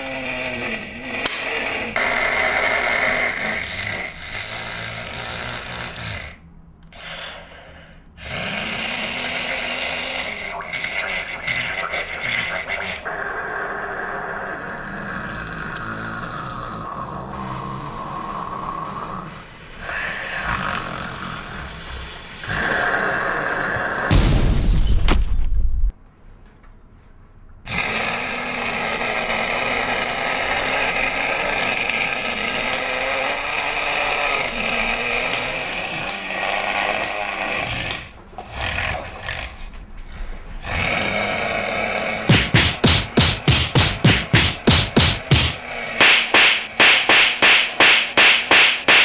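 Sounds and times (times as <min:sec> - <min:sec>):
comic snoring: 0:00.0 - 0:06.4, 0:08.2 - 0:24.1, 0:42.3 - 0:49.0
snorts: 0:00.0 - 0:06.4, 0:07.0 - 0:24.1, 0:36.0 - 0:49.0.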